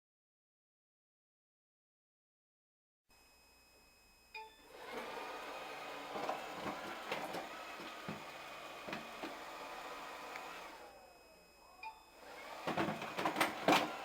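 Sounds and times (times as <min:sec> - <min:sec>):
robot vacuum motor whine: 0:04.6 - 0:14.0.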